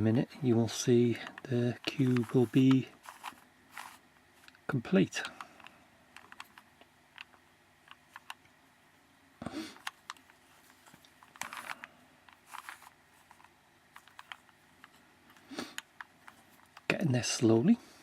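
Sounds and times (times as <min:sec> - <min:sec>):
puzzle cube clicks: 0:01.2 - 0:04.6
rasping plastic twists: 0:01.2 - 0:04.6, 0:09.8 - 0:16.9.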